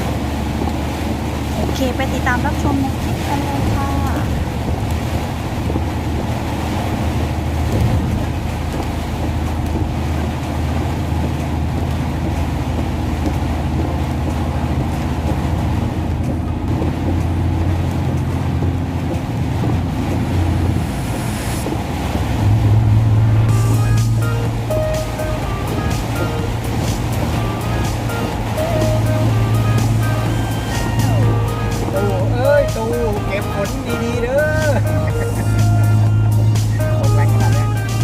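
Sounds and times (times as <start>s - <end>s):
car engine drone: 0.0s - 38.0s
road noise: 0.0s - 38.0s
wind and rain on car: 0.0s - 38.0s.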